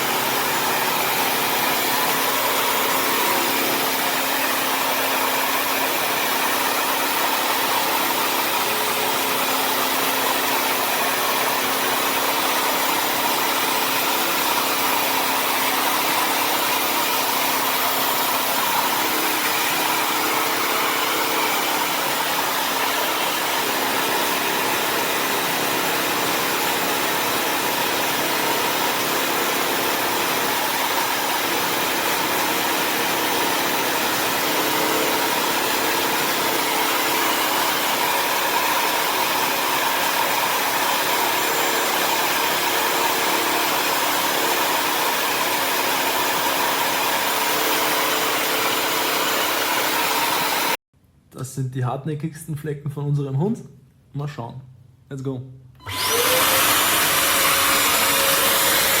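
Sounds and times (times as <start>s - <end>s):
vacuum cleaner motor drone: 0.0s - 50.8s, 55.8s - 59.0s.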